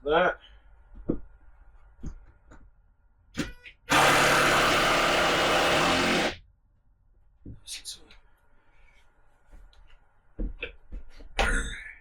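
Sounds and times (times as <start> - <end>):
power drill driving screw: 3.9 - 6.4.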